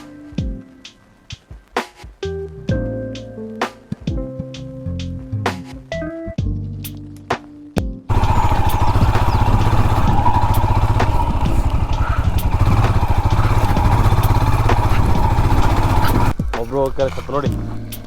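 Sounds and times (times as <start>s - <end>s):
music: 0.0s - 18.0s
motorcycle engine running: 8.1s - 17.0s.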